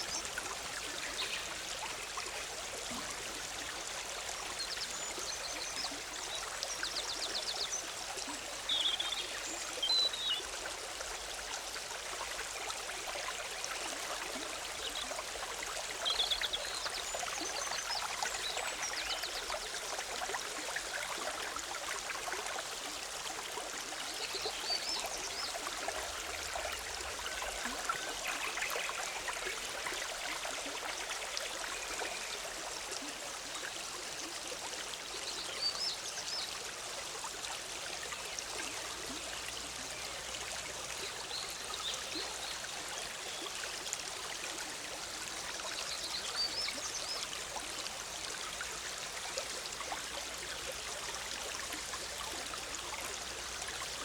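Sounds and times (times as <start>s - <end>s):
stream bubbling over rocks: 9.9s - 54.0s.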